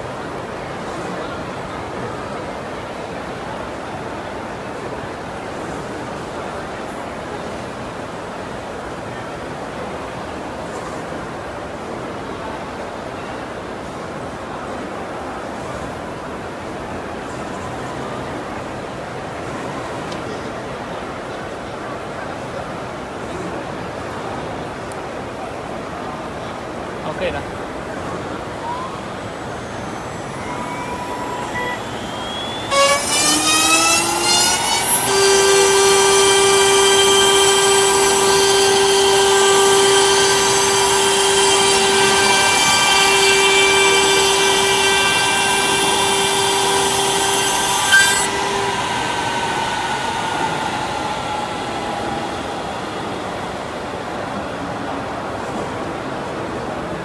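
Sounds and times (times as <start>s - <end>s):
electric motor whining: 28.7s - 54.2s.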